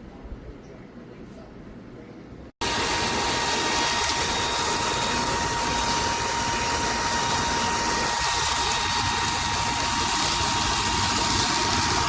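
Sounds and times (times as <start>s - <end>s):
vacuum cleaner running: 2.6s - 12.0s.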